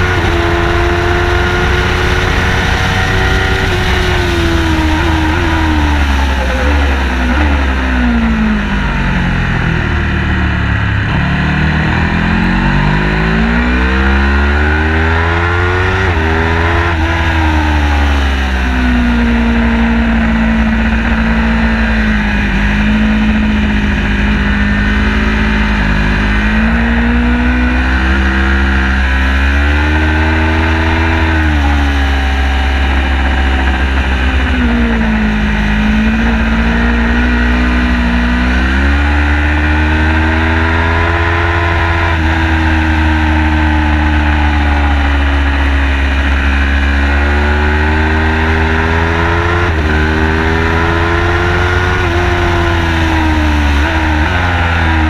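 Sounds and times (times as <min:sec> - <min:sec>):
low rumble: 0:00.0 - 0:29.3, 0:48.6 - 0:55.0
car engine under load: 0:00.0 - 0:55.0.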